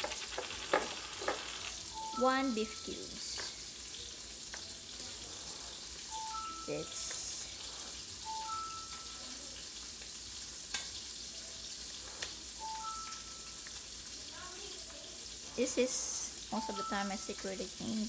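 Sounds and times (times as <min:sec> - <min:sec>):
food sizzling in a pan: 0:00.0 - 0:18.0
two-note electronic beep: 0:02.0 - 0:03.1, 0:06.1 - 0:07.2, 0:08.2 - 0:09.3, 0:12.6 - 0:13.6.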